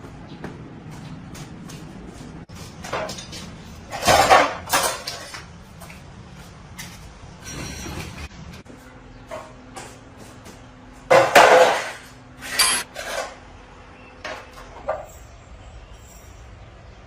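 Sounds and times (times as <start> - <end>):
metal parts clattering: 11.3 - 13.4
metal scraping rasp: 12.4 - 13.4.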